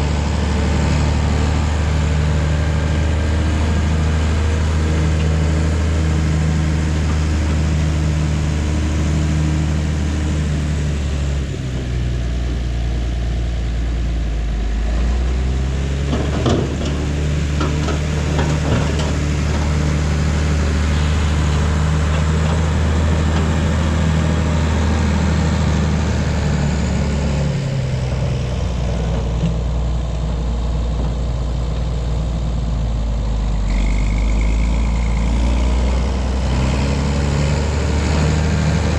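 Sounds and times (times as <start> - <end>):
heavy diesel engine running: 0.0 - 38.9.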